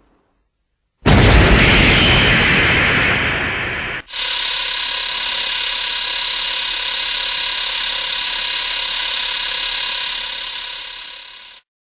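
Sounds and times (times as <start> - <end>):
mechanical whirring hum: 4.1 - 11.6.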